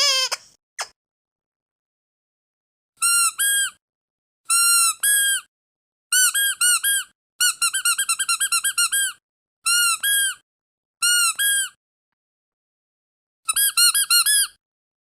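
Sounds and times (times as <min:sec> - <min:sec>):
squeaky dog toy squeaking: 0:00.0 - 0:00.9, 0:03.0 - 0:03.8, 0:04.5 - 0:05.5, 0:06.1 - 0:10.4, 0:11.0 - 0:11.8, 0:13.5 - 0:14.6.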